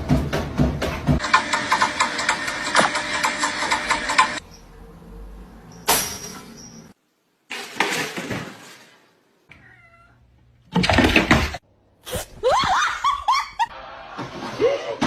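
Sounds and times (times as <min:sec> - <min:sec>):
cat meowing faintly: 0:09.5 - 0:10.3.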